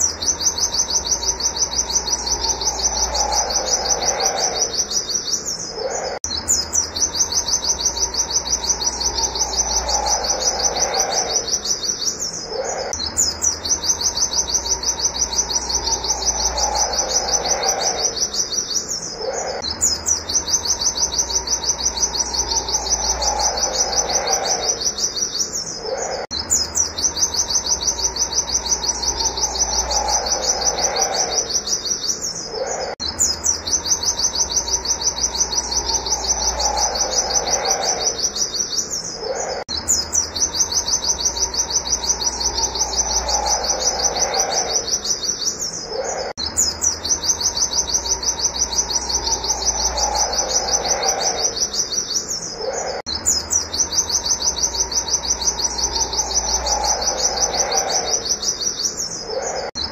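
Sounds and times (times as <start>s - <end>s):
bird singing high notes: 0.0s - 59.9s
low hum: 5.6s - 18.4s, 19.0s - 24.9s, 25.7s - 31.5s, 32.5s - 38.1s, 46.0s - 51.5s.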